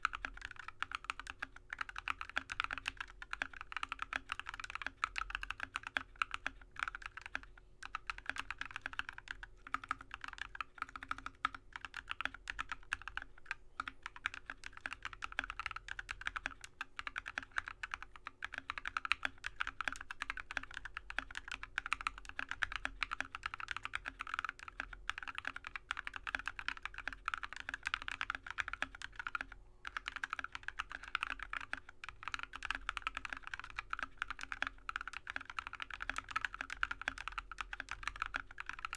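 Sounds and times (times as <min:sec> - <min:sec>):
faint steady hum: 0:00.0 - 0:38.9
fast typing on mechanical keyboard: 0:00.0 - 0:38.9.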